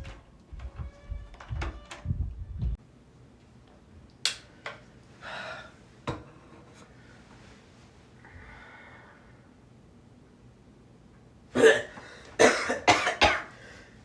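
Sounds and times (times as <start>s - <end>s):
sharp soft clicks: 4.2s - 4.5s.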